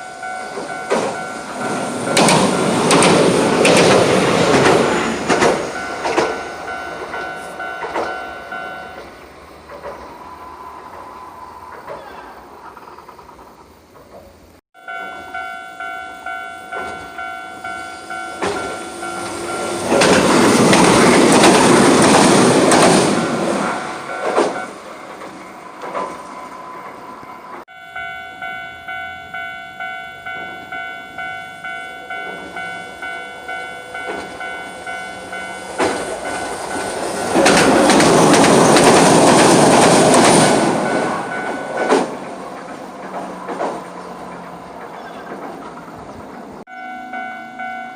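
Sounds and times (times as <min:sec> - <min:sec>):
level crossing warning bell: 0:00.0 - 0:09.3, 0:14.8 - 0:25.0, 0:27.3 - 0:42.3, 0:46.6 - 0:47.9
tram rumbling over crossing: 0:00.0 - 0:47.9.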